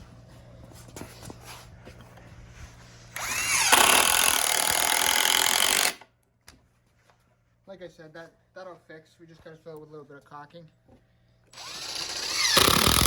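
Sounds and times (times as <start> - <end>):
power drill driving screw into wood: 3.2 - 6.1, 11.5 - 13.0.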